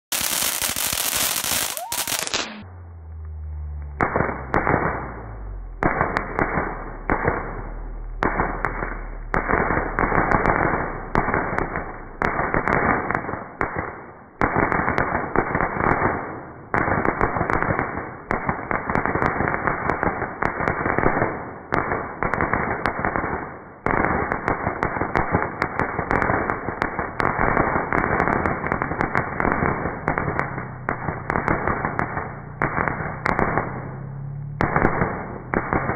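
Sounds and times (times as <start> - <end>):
fireworks crackling and popping: 0.0 - 35.9.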